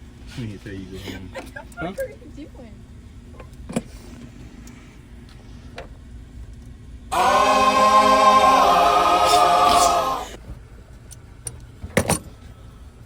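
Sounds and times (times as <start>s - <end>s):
choir singing sustained chord: 7.1s - 10.4s.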